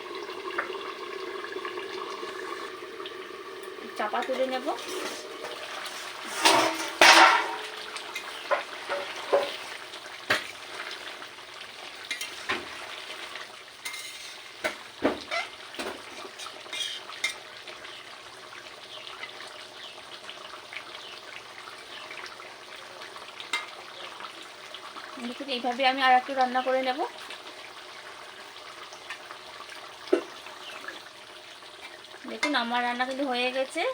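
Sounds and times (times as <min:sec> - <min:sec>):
curry sizzling in a pot: 0:00.0 - 0:33.9
spoon scraping a pot: 0:04.2 - 0:09.6, 0:12.1 - 0:12.5, 0:13.8 - 0:14.5, 0:16.2 - 0:17.4
pot lid clattering: 0:04.3 - 0:09.6.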